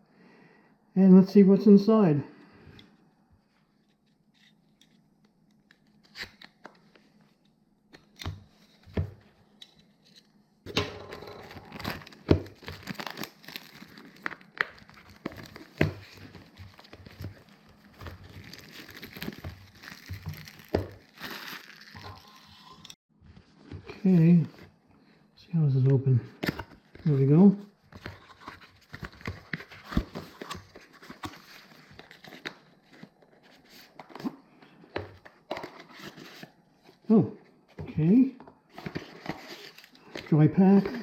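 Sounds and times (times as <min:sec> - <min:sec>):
packaging wrap tearing and crinkling: 0:11.4 - 0:22.9.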